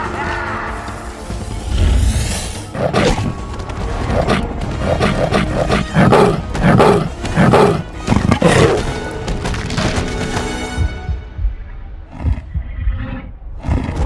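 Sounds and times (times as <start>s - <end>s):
music: 0.0s - 14.0s
big cat roars and growls: 4.1s - 8.9s, 12.0s - 14.0s.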